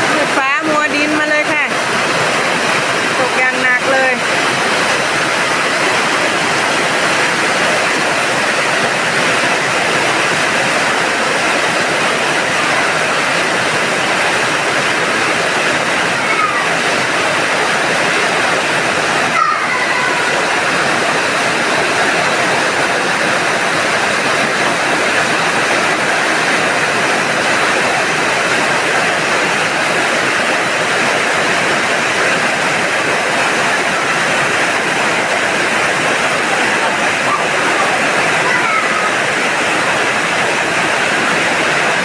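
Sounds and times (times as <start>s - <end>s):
heavy rain and wind rushing: 0.0s - 42.0s.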